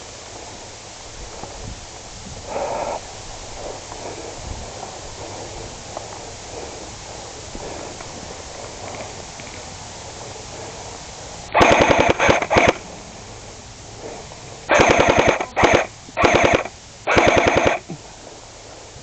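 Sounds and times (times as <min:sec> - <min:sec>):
airsoft gun firing bursts: 0:11.5 - 0:12.9, 0:14.7 - 0:18.0.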